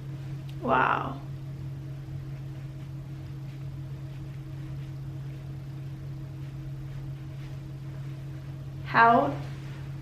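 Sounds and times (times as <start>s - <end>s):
steady low hum: 0.0s - 10.0s
faint soft rustles: 2.1s - 10.0s.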